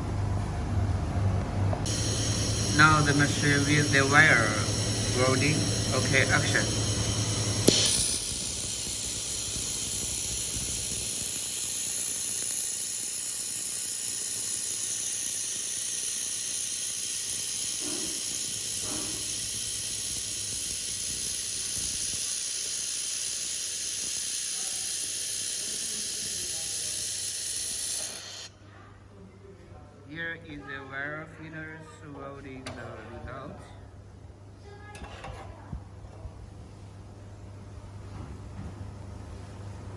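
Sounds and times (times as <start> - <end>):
laser welder hissing: 1.8 - 28.5.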